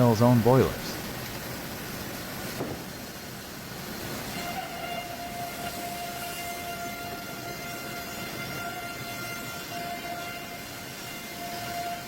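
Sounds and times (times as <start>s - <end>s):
saw whining: 4.4s - 12.0s.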